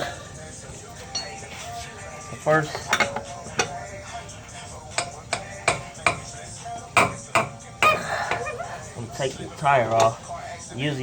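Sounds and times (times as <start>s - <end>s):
tools clicking and knocking: 2.7s - 3.8s.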